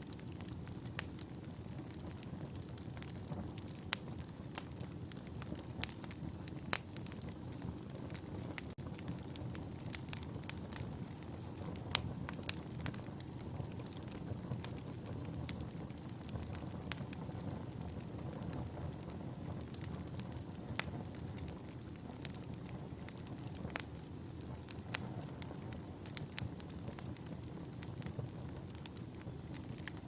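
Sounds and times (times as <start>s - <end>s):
fire crackling and popping: 0.0s - 30.0s
fire rumbling: 0.0s - 30.0s.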